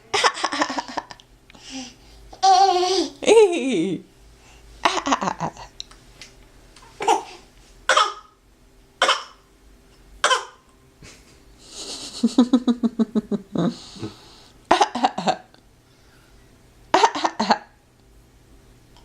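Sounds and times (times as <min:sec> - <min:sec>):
child giggling: 0:00.1 - 0:01.2, 0:04.8 - 0:05.7, 0:11.7 - 0:13.8
child fake coughing: 0:07.0 - 0:08.4, 0:09.0 - 0:09.4, 0:10.2 - 0:10.6, 0:14.7 - 0:15.5, 0:16.9 - 0:17.8.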